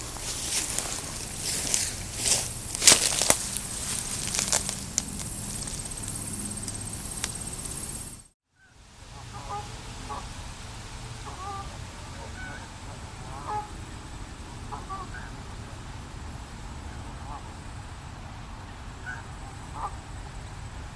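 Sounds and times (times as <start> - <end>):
distant waterfowl honking: 0.0 - 8.1, 9.2 - 10.4, 11.2 - 15.5
loud hiss with crackles: 0.0 - 15.8
low outdoor rumble: 0.0 - 20.9.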